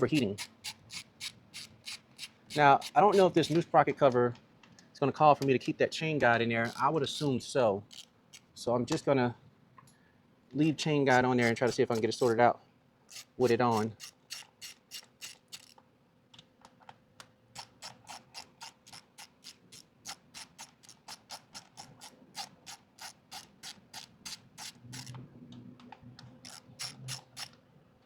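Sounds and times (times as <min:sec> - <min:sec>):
ratchet wrench clicking: 0:00.0 - 0:03.6, 0:06.6 - 0:07.3, 0:07.9 - 0:08.5, 0:11.1 - 0:12.4, 0:13.1 - 0:15.8, 0:17.6 - 0:25.1, 0:26.4 - 0:27.6.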